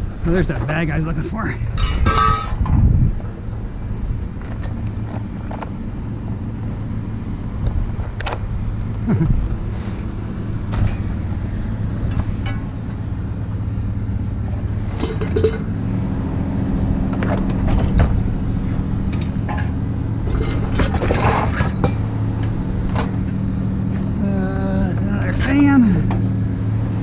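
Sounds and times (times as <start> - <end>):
vehicle engine idling: 0.0 - 27.0
metallic clinking and rattling: 1.7 - 2.7, 12.0 - 13.1, 14.8 - 15.8, 19.0 - 23.4.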